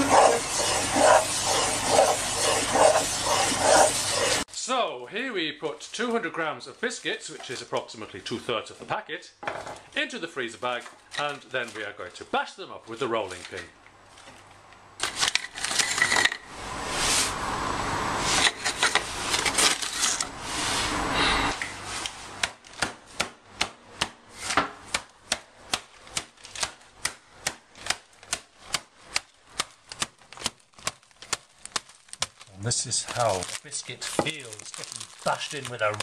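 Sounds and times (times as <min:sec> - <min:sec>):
rolling pin bashing biscuits: 0:00.0 - 0:04.5, 0:22.3 - 0:36.0
plastic bag crinkling: 0:19.4 - 0:20.3, 0:29.3 - 0:36.0.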